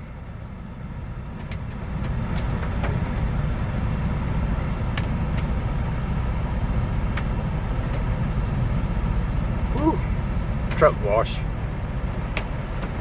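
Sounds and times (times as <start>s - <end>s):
truck engine and road rumble: 0.0s - 13.0s.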